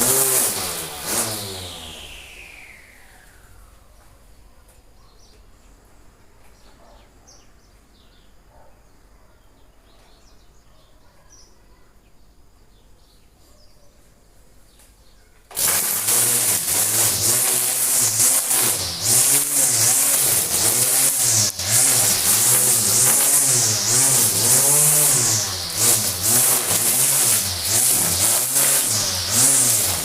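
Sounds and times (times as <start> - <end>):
loud wavering pitched sound: 1.1 - 3.8.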